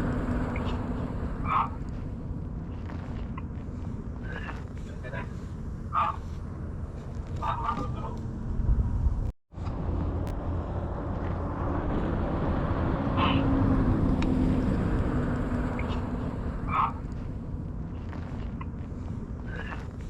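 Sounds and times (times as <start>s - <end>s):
vehicle engine passing: 0.0s - 4.2s, 7.4s - 19.2s
outdoor rumble: 0.0s - 20.0s.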